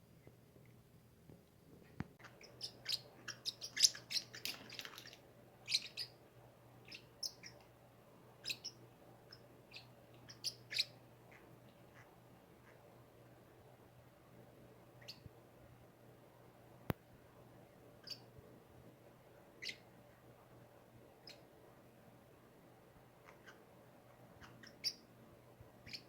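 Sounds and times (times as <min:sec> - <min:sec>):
parrots chirping: 0:02.2 - 0:06.2, 0:06.8 - 0:07.6, 0:08.4 - 0:11.4, 0:19.6 - 0:19.8, 0:24.4 - 0:25.0.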